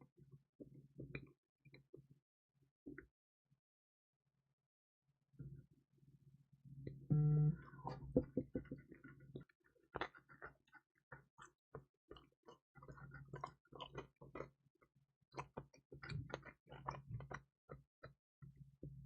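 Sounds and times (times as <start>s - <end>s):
brief low pitched hum: 7.1s - 8.4s
chewing crispy pizza: 8.7s - 14.6s, 15.3s - 17.8s.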